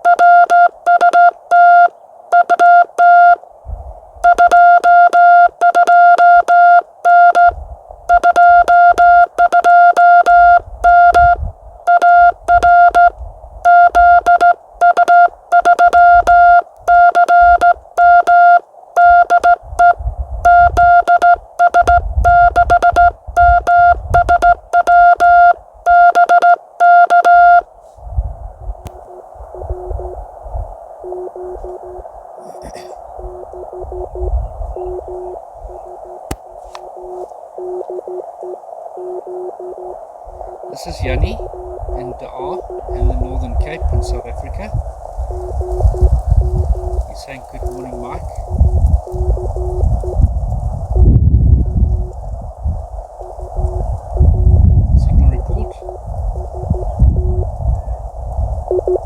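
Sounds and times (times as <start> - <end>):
morse code tone: 0.0 - 3.4, 4.2 - 27.6, 29.0 - 30.2, 31.0 - 32.0, 33.2 - 35.4, 37.0 - 44.2, 47.6 - 48.3, 49.0 - 50.2, 55.2 - 57.5, 58.7 - 59.0.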